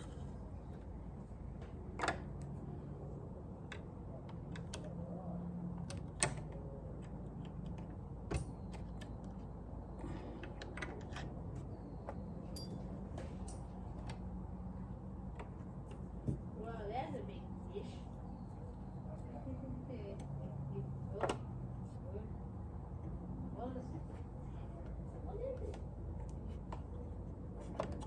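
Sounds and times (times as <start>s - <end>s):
light clicks and taps of parts: 0.0s - 5.1s, 5.7s - 14.4s, 15.2s - 16.6s, 24.1s - 28.0s
steady low hum: 0.0s - 28.0s.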